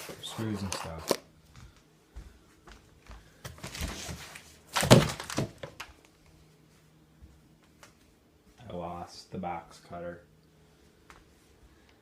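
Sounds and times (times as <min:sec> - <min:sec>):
packaging rustling: 0:03.6 - 0:05.9.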